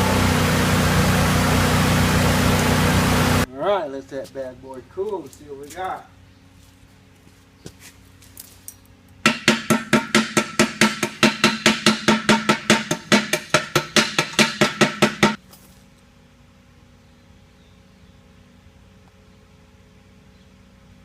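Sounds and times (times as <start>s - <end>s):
chipping hammer striking metal: 9.2s - 15.4s.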